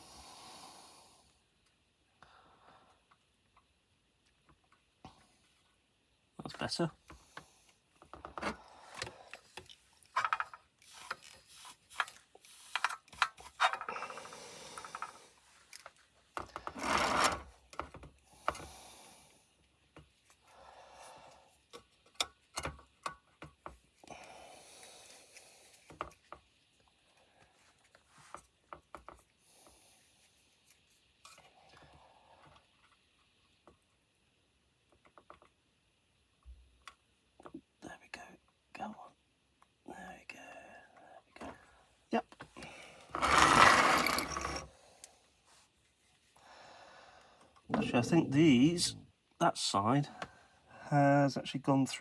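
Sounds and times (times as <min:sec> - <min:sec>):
rubbing and scraping bursts: 0:43.2 - 0:44.7.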